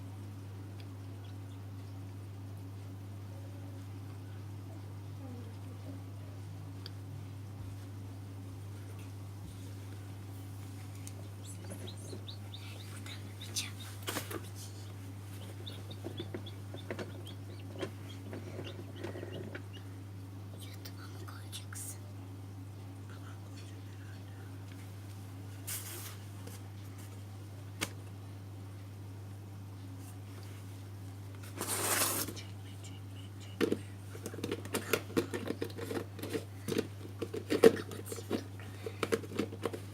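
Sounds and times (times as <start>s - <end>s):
low hum: 0.0s - 25.5s
chicks peeping: 1.1s - 2.0s, 10.9s - 20.0s.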